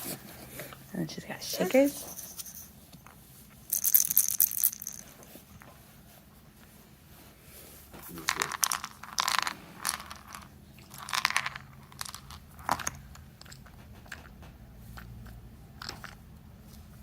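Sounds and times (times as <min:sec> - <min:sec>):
toy shakers rattling: 0:01.6 - 0:05.6, 0:08.0 - 0:13.0.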